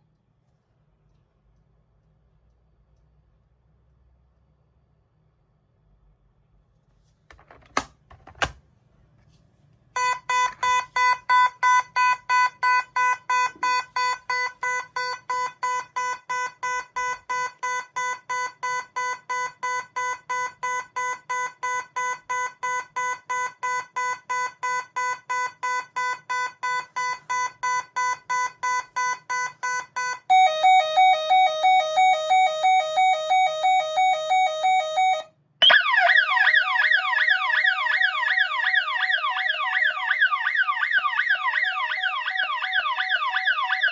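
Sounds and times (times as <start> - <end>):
pulsed alarm beeping: 10.0 - 43.9
siren rising sweep: 30.3 - 43.9
warbling alarm tone: 30.3 - 43.9.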